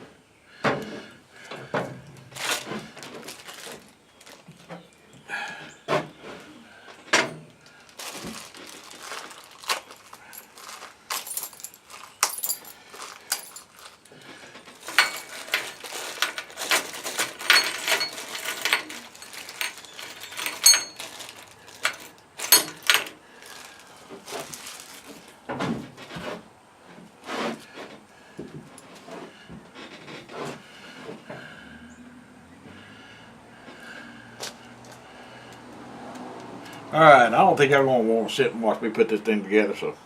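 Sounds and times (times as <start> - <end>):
metal parts clinking and rattling: 8.0 - 23.7
short metallic rings: 14.8 - 23.1.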